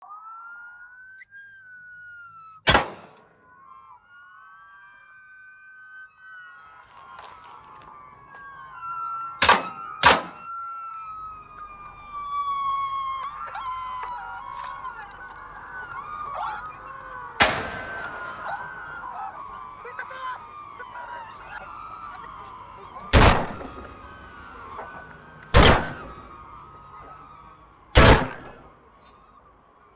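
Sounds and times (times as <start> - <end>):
emergency sirens wailing: 0.0 - 29.9
loud gunshot: 2.7 - 3.2, 9.4 - 10.4, 17.4 - 18.9, 23.1 - 24.0, 25.5 - 26.4, 28.0 - 28.6.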